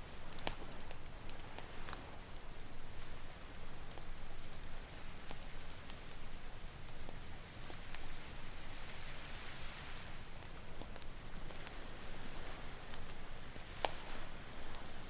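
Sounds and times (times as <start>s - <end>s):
campfire crackling: 0.0s - 15.0s
ocean surf: 8.6s - 10.4s.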